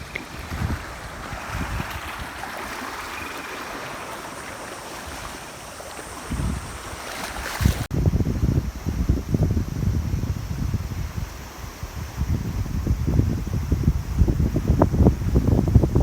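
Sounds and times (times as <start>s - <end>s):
waves washing on shore: 0.0s - 7.9s
wind gusts buffeting microphone: 0.0s - 16.0s.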